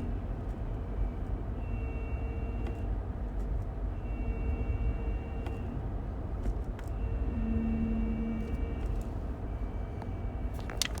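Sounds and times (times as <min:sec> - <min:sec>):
vehicle rumble: 0:05.4 - 0:11.0.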